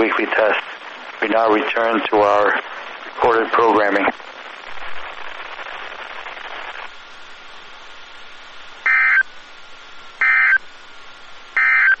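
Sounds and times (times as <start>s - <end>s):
buzzy digital data bursts: 0.0s - 7.4s, 8.8s - 9.3s, 10.2s - 10.7s
radio hiss: 0.0s - 12.0s.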